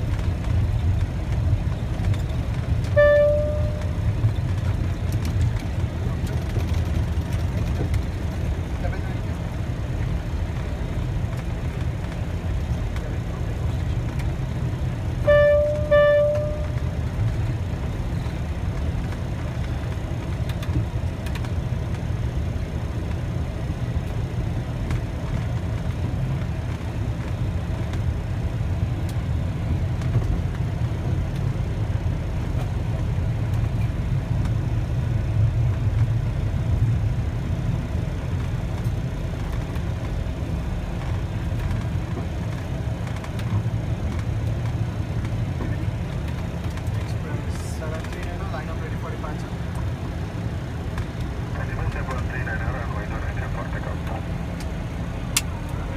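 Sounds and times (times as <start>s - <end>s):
aircraft engine and airflow rumble: 0.0s - 55.9s
short electronic tones: 3.0s - 4.0s, 15.2s - 16.8s.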